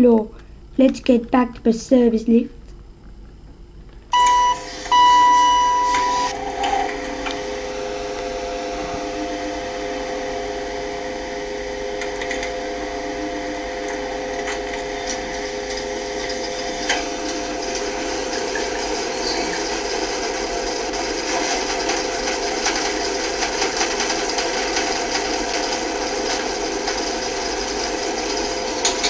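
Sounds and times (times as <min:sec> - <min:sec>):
lift machinery hum: 0:01.7 - 0:29.0
droning tones: 0:03.4 - 0:29.0
electronic beeps: 0:04.2 - 0:06.3.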